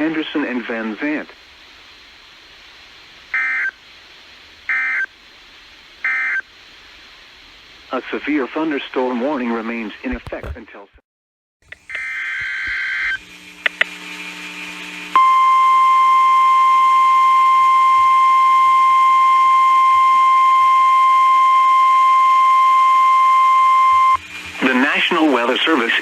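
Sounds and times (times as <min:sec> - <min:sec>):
loud steady alarm tone: 0:14.0 - 0:25.6.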